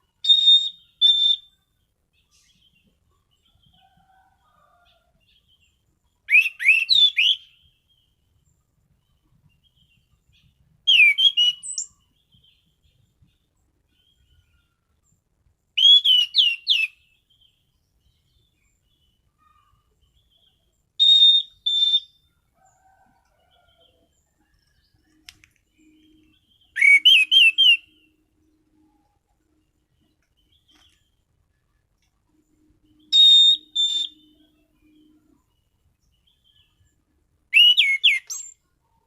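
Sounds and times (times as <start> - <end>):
thrush singing whistled notes: 0.1 - 1.6, 6.2 - 7.7, 10.9 - 12.6, 15.8 - 17.2, 21.0 - 22.3, 25.2 - 28.9, 32.8 - 35.4, 37.5 - 38.6.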